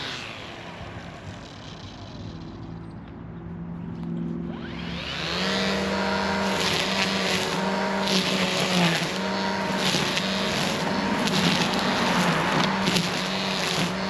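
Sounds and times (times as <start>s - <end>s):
electric motor whining: 0.0s - 2.8s, 4.5s - 14.0s
tool biting into material: 5.4s - 14.0s.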